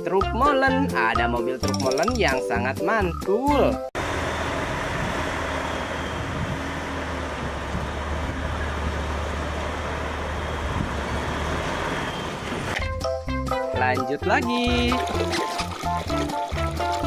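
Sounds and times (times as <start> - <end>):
truck engine humming: 4.0 - 12.8.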